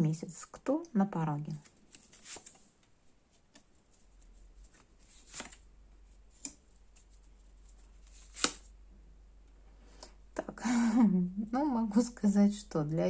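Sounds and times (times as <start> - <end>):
cards snapping and tapping: 4.7 - 5.6, 8.1 - 8.7.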